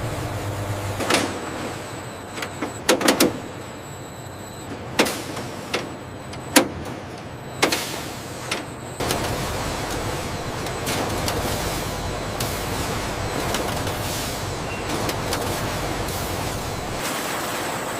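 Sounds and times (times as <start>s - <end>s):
factory machinery humming: 0.0s - 17.9s
thin high whine: 7.9s - 17.9s.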